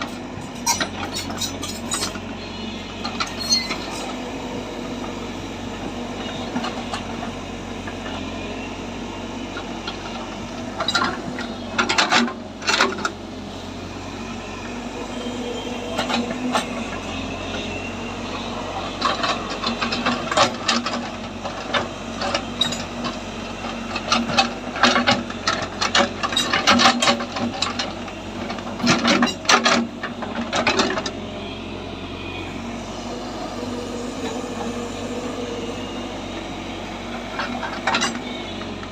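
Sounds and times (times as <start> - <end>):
earthmoving machine running: 27.8 - 38.9.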